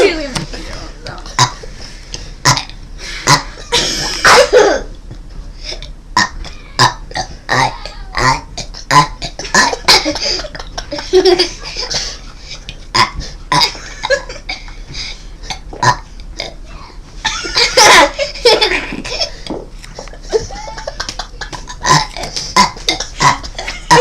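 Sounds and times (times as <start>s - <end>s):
child burping: 3.3s - 4.9s, 5.8s - 10.2s, 15.5s - 16.6s, 21.7s - 24.0s.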